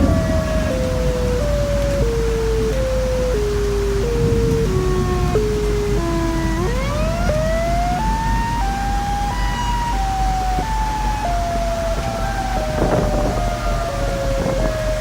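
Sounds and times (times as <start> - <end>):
low rumble: 0.0 - 10.1
electronic siren-like tone: 0.0 - 15.0.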